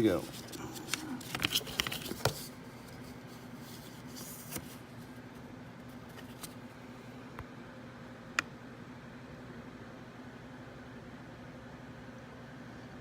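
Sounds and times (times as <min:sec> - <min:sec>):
faint steady hum: 0:00.0 - 0:13.0
paper rustling and clicks: 0:00.2 - 0:02.5.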